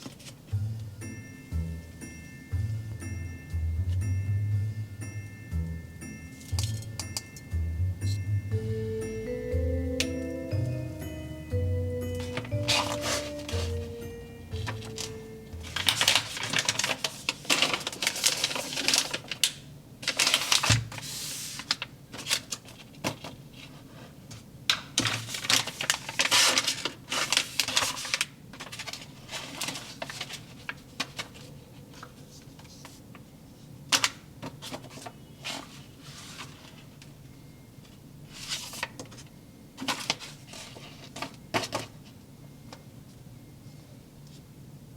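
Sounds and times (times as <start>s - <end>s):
plastic packaging crinkling: 12.2s - 13.9s, 14.5s - 23.8s, 24.9s - 32.8s.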